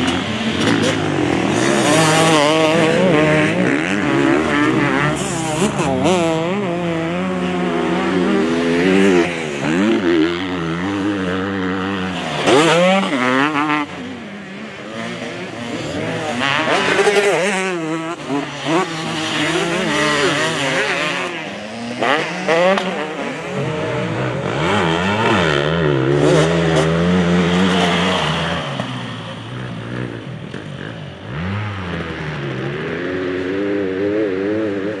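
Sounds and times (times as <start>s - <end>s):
motocross engine revving: 0.0s - 35.0s.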